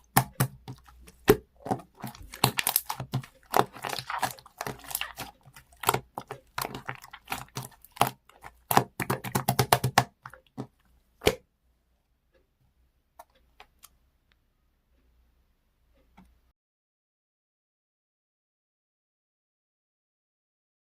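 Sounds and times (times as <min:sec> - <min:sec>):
slime squished by hand: 0:00.0 - 0:11.4.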